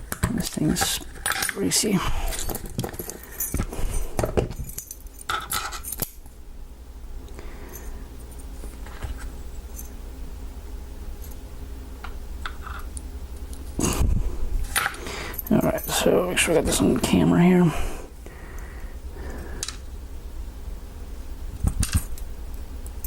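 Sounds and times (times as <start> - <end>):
metal lock parts clinking: 0.5 - 3.7, 4.3 - 6.2.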